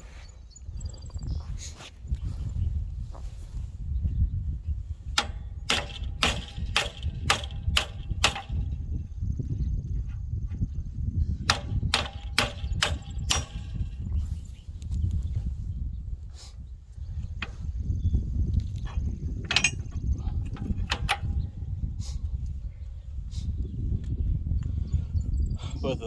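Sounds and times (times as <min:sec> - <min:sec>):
hammer striking steel: 0:05.2 - 0:08.7, 0:11.5 - 0:13.9.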